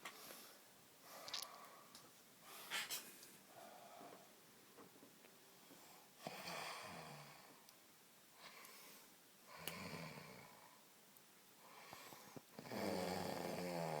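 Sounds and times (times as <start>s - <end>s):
person snoring: 12.6s - 14.0s.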